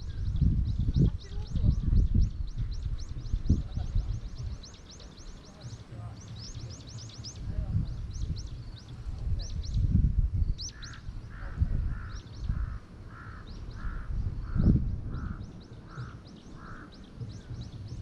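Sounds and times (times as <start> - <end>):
small birds chirping: 0.0 - 18.0
crow cawing: 10.7 - 17.0.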